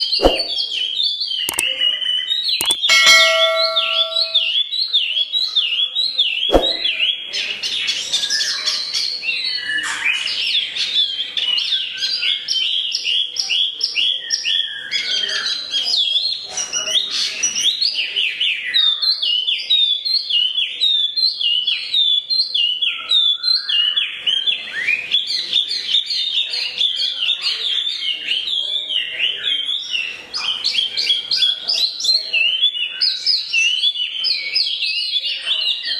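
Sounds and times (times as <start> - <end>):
songbird chirping and trilling: 0.0 - 35.9
sharp click: 0.2 - 0.6, 2.6 - 4.5, 6.5 - 6.9.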